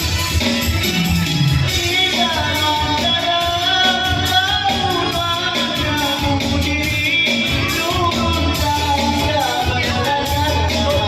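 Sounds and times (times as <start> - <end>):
guitar: 0.0 - 11.0
steady beat: 0.0 - 11.0
upbeat song with singing: 0.0 - 11.0.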